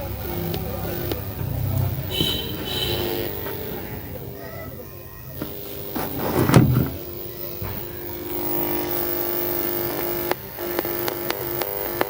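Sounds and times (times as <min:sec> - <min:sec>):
thump: 0:05.4 - 0:07.1.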